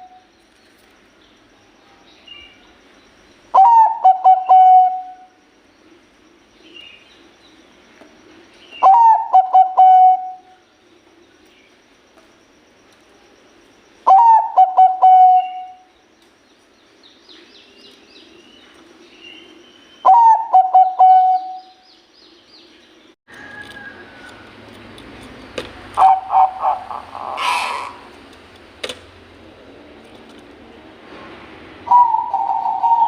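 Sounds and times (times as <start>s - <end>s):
small birds chirping: 0.0s - 4.6s, 5.4s - 9.6s, 15.4s - 23.2s
dove cooing: 3.6s - 5.3s, 8.8s - 10.4s, 14.1s - 15.8s, 20.1s - 21.7s, 25.9s - 28.2s, 31.8s - 33.0s.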